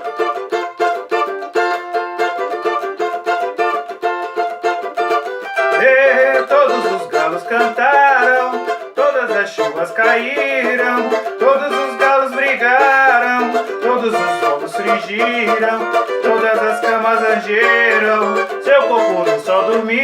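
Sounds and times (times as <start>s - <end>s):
plucked string instrument: 0.0s - 20.0s
wordless singing voice: 5.7s - 20.0s.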